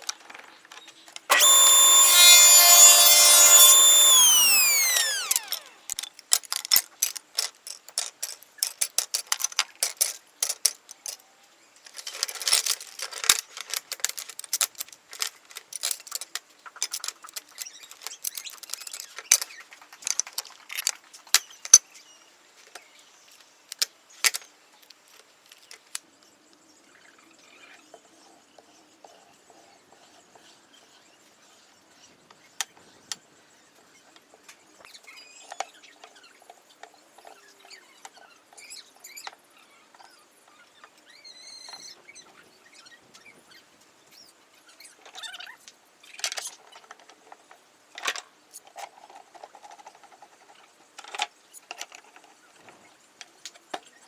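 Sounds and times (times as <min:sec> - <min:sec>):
small hard objects clicking on workbench: 0:00.0 - 0:11.2.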